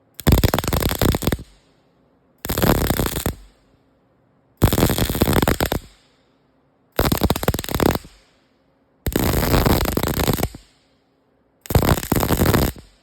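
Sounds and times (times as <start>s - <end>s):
welding arc crackling: 0.2s - 1.6s, 2.4s - 3.6s, 4.6s - 6.0s, 7.0s - 8.3s, 9.1s - 10.8s, 11.7s - 13.0s.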